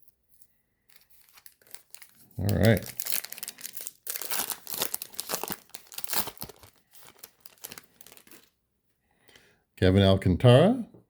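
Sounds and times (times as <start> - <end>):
wrapper tearing and crinkling: 0.9 - 8.5.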